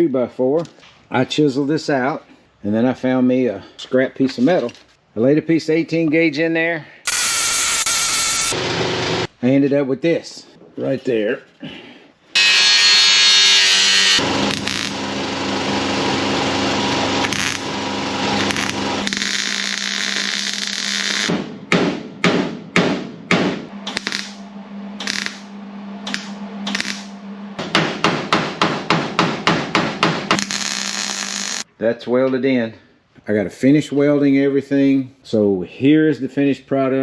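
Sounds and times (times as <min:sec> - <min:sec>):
hammer striking sheet metal: 0:21.3 - 0:30.9.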